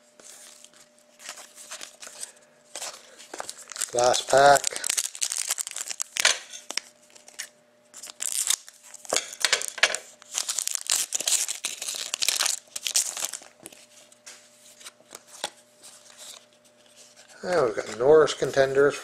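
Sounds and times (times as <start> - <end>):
foil wrapper tearing and crinkling: 1.2 - 13.9.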